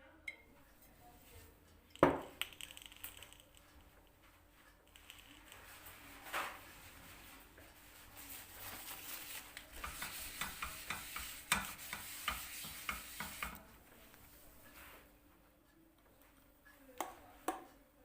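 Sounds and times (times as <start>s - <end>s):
utensil clicking against dish: 9.7s - 13.7s.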